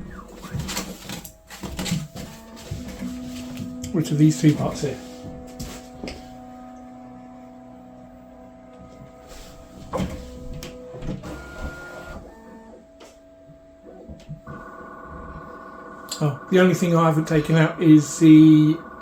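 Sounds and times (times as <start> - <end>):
printer motors humming tones: 0.0 - 19.0.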